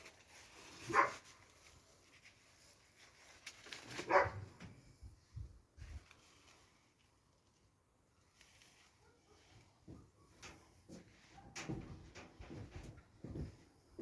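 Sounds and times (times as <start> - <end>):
dog barking: 0.9 - 1.2, 4.0 - 4.5, 9.0 - 9.6, 11.4 - 11.7.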